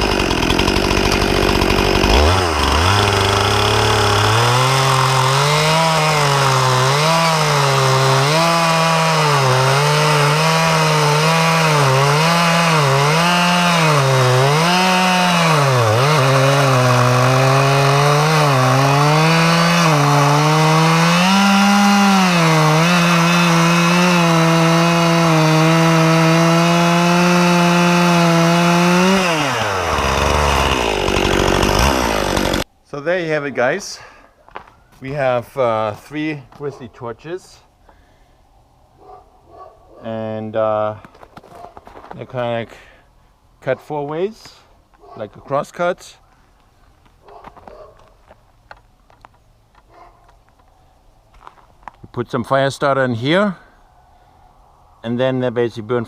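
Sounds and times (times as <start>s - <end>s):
chainsaw cutting into log: 0.0s - 32.7s.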